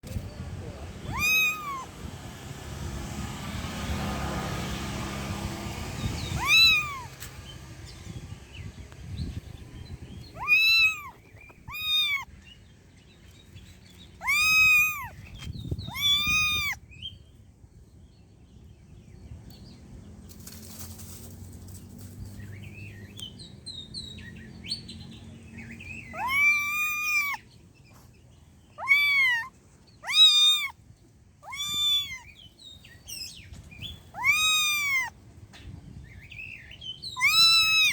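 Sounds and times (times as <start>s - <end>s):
cat meowing: 0.9s - 2.1s, 6.0s - 7.3s, 10.3s - 12.3s, 14.1s - 16.8s, 26.1s - 27.5s, 28.8s - 30.8s, 31.4s - 32.4s, 34.1s - 35.2s, 37.1s - 37.9s.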